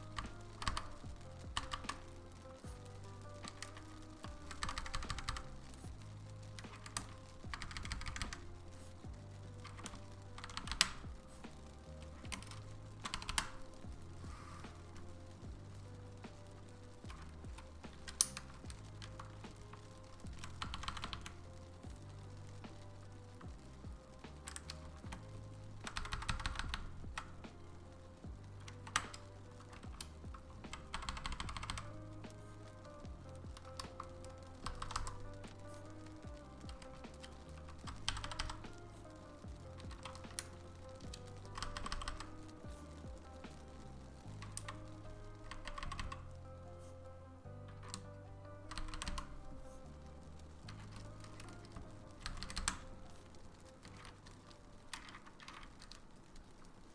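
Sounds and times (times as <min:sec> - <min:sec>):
typing on mechanical keyboard: 0:00.0 - 0:05.6, 0:06.5 - 0:08.6, 0:09.6 - 0:11.2, 0:12.0 - 0:13.8, 0:16.4 - 0:22.0, 0:22.7 - 0:46.4, 0:47.7 - 0:49.9, 0:50.7 - 0:56.6
background music: 0:00.0 - 0:56.9.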